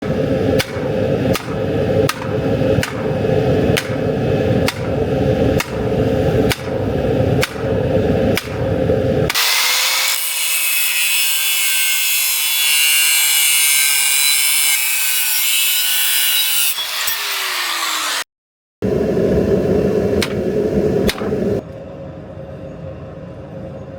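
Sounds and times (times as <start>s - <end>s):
power tool hissing and humming: 0.0s - 14.6s.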